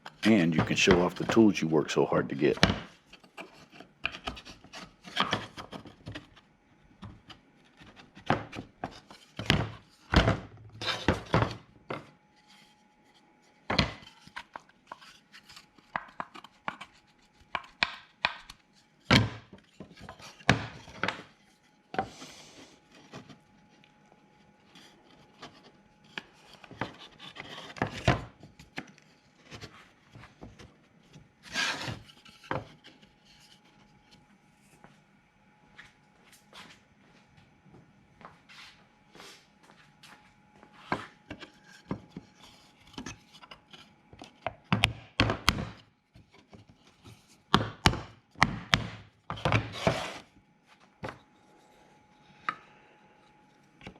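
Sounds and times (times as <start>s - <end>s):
wooden parts knocking and rubbing: 0.0s - 1.6s.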